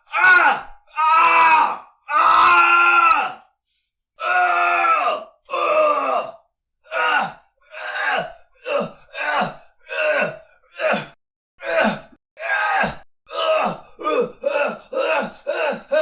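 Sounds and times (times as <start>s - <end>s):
man groaning in pain: 8.0s - 16.0s.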